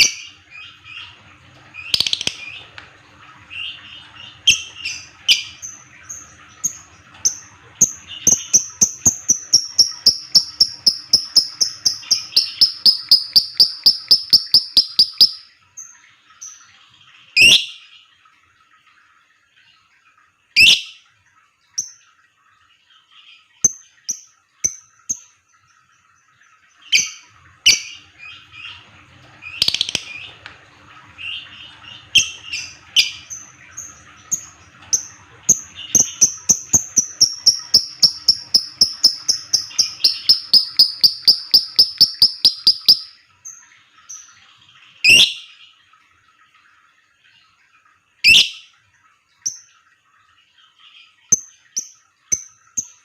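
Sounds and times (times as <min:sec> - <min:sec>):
bird rapid high chirps: 0:08.3 - 0:15.5, 0:29.5 - 0:30.2, 0:36.0 - 0:43.2.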